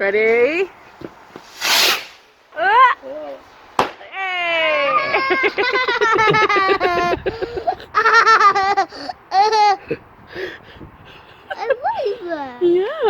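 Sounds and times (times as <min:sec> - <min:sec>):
young child giggling: 0:04.6 - 0:10.1, 0:11.2 - 0:12.8.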